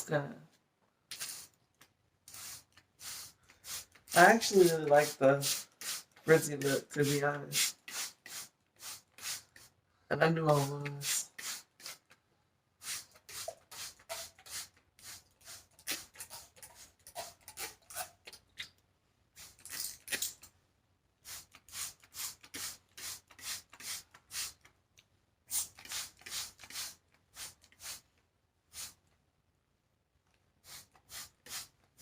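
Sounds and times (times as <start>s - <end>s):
rasping rustling wig strokes: 2.3s - 9.8s.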